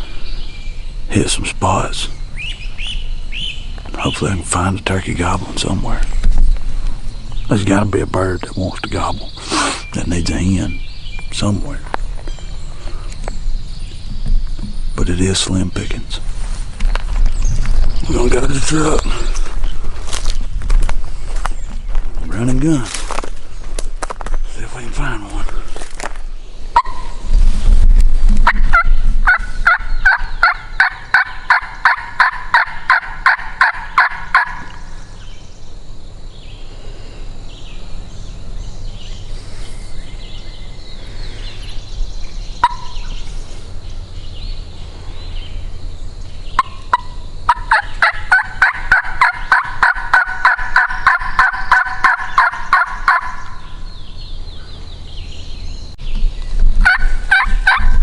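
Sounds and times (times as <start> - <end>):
turkey call hen-like notes: 26.8 - 27.2, 42.6 - 43.0, 46.6 - 53.6, 56.8 - 58.0.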